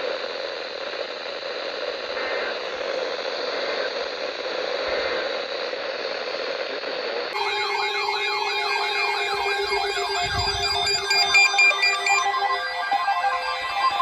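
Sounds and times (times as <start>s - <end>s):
warbling electronic siren: 7.4s - 14.0s.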